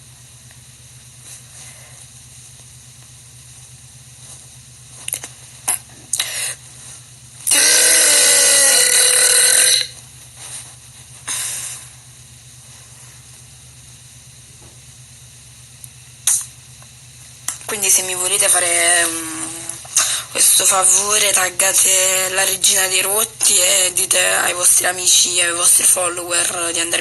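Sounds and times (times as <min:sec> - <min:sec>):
woman burping: 0:07.5 - 0:10.0
short clicks: 0:15.8 - 0:16.5.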